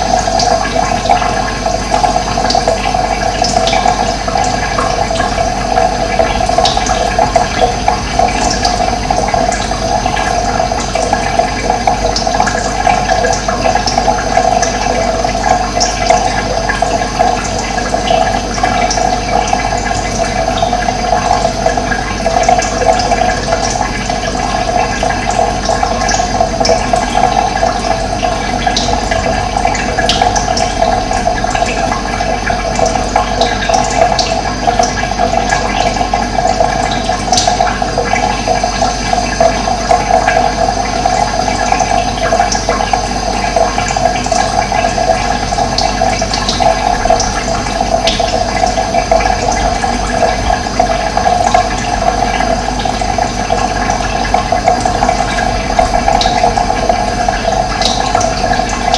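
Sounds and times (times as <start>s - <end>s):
running water rushing: 0.0s - 58.9s.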